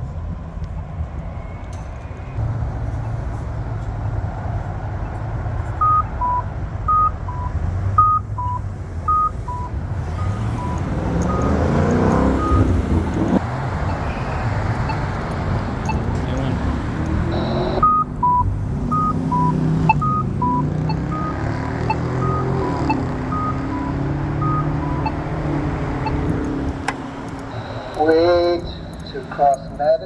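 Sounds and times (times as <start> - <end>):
road traffic: 0.0 - 30.0
vehicle passing: 0.0 - 30.0
electronic beeps alternating high and low: 5.8 - 30.0.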